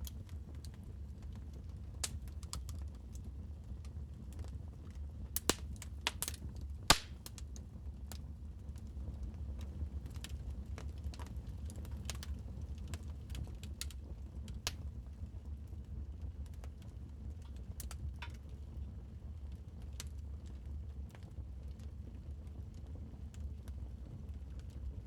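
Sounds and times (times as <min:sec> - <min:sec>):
wood fire crackling: 0:00.0 - 0:18.6.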